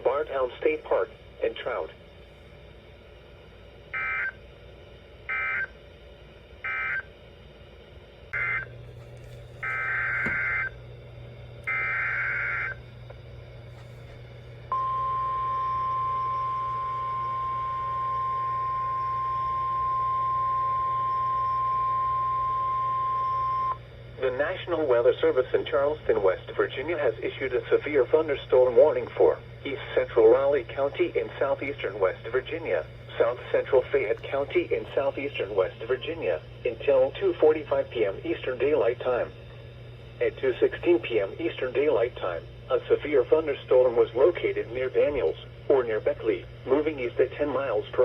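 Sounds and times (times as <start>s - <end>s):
low steady hum: 0.0s - 48.0s
steady weather alert tone: 3.9s - 4.5s, 5.2s - 5.8s, 8.4s - 8.8s, 9.6s - 10.8s, 11.6s - 12.9s
warbling data bursts: 11.7s - 12.8s.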